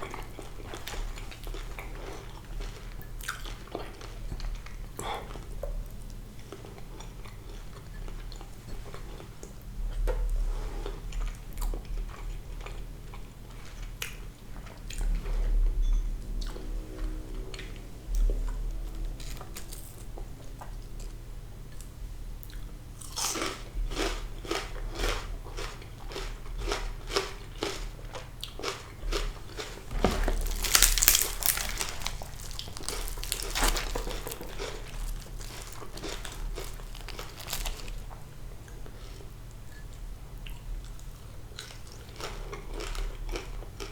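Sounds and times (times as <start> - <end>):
crunchy chewing: 0.0 - 5.5, 17.6 - 21.1, 22.4 - 43.9.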